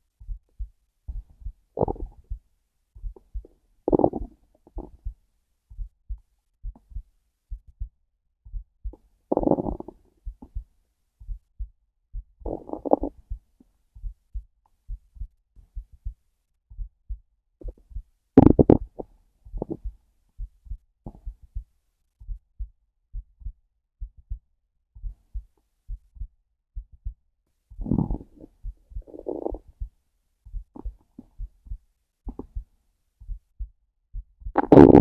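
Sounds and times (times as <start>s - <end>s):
heartbeat thumping: 0.2s - 2.4s, 3.0s - 24.4s, 25.0s - 29.9s, 30.5s - 35.0s
stomach growling: 1.8s - 2.4s, 3.2s - 5.0s, 9.3s - 10.0s, 12.4s - 13.2s, 18.4s - 19.9s, 27.8s - 29.7s, 34.6s - 35.0s.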